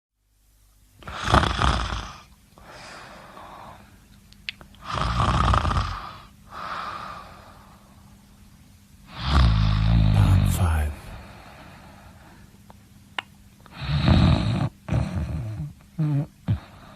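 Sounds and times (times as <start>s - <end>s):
soft airy breath: 2.6s - 4.0s, 6.0s - 8.2s, 11.1s - 12.6s
person snoring: 9.1s - 11.5s.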